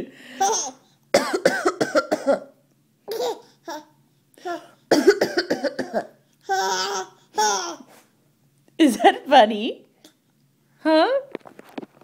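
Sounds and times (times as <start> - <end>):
woman coughing: 1.2 - 2.5, 4.9 - 6.1
baby giggling: 3.1 - 3.9, 6.5 - 7.9.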